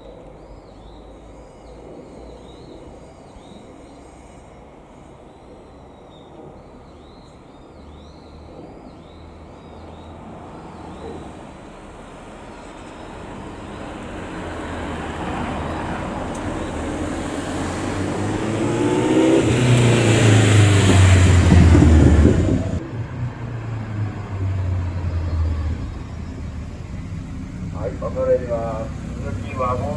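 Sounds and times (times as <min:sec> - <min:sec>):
road and wind noise: 0:00.0 - 0:29.9
vehicle engine accelerating hard: 0:09.8 - 0:29.9.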